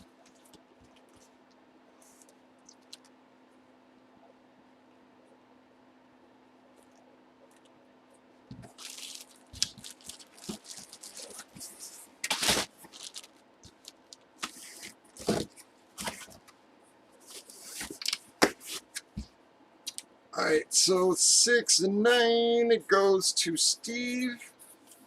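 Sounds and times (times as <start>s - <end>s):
card sleeves crinkling and rustling: 8.5s - 16.5s, 17.2s - 19.2s.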